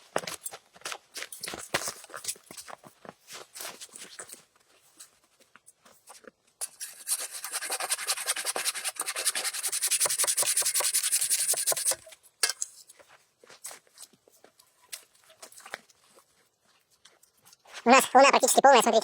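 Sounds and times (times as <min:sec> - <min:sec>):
hand saw cutting wood: 0:06.6 - 0:12.1.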